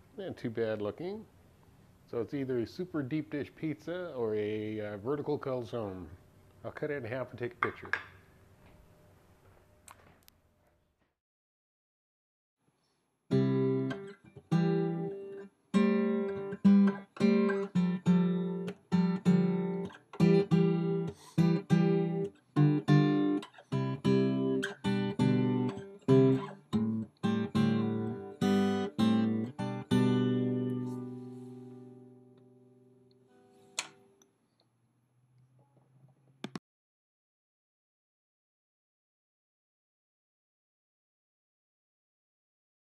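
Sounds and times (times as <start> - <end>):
acoustic guitar strumming chords: 13.3 - 34.0.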